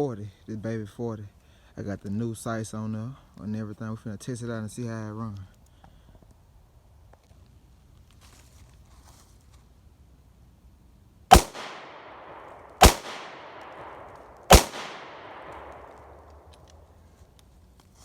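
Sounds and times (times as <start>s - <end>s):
long rolling echo: 11.3s - 16.5s
pistol shots: 11.3s - 16.6s.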